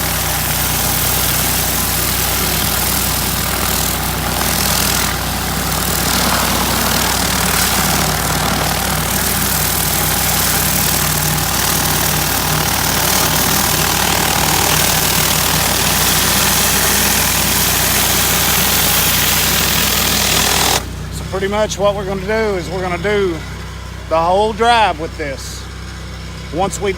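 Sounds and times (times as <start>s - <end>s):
water spraying hiss: 0.0s - 20.8s
pressure washer engine drone: 0.0s - 26.9s.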